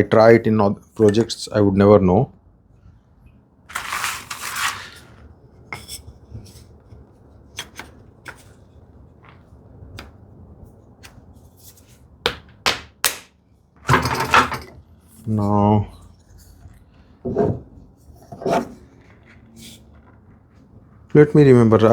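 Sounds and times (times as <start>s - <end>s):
tool scraping: 3.7s - 6.7s.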